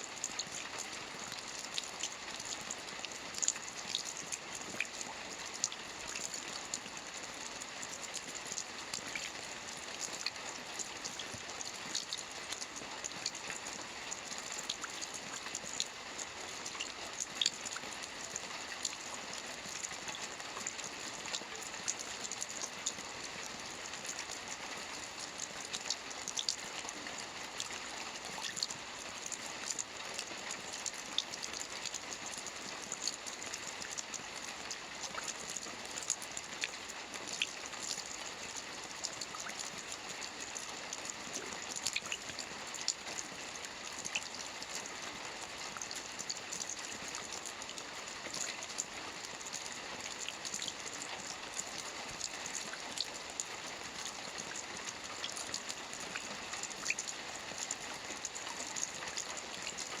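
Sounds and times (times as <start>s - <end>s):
gentle rain with ticking drops: 0.0s - 60.0s.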